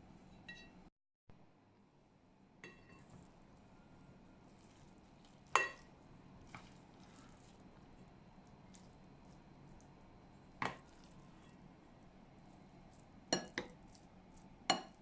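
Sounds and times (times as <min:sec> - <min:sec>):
kitchenware clinking: 0:02.6 - 0:03.3, 0:05.5 - 0:05.9.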